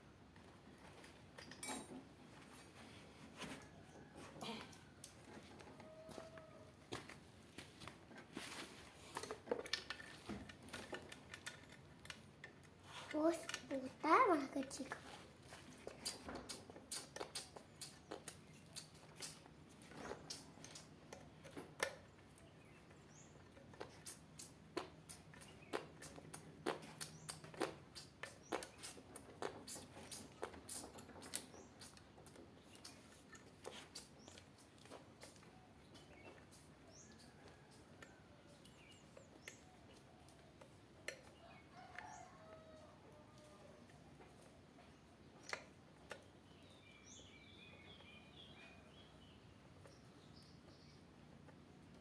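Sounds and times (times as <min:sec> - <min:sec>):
faint bird chirping: 0:20.0 - 0:51.4.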